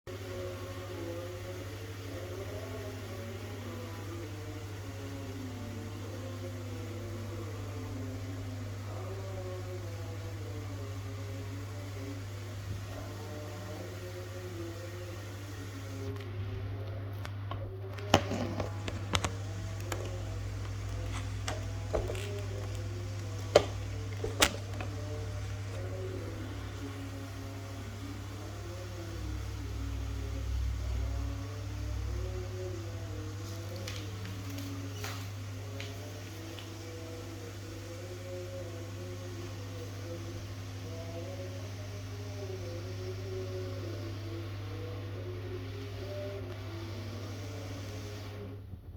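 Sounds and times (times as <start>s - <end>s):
steady low hum: 0.0s - 48.9s.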